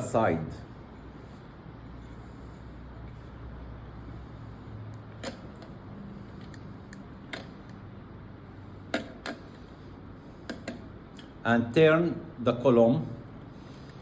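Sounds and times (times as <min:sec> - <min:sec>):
low steady hum: 0:00.0 - 0:14.0
lamp parts clicking and tapping: 0:08.9 - 0:09.6, 0:10.4 - 0:11.3.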